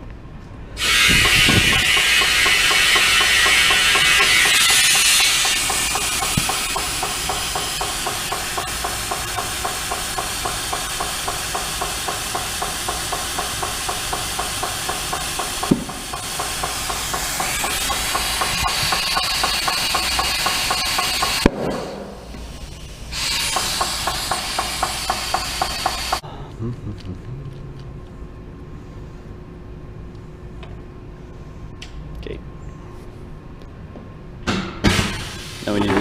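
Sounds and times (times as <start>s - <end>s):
compressed air hissing into tire: 0.8s - 26.2s, 34.9s - 35.8s
rhythmic pulsing: 0.9s - 21.4s.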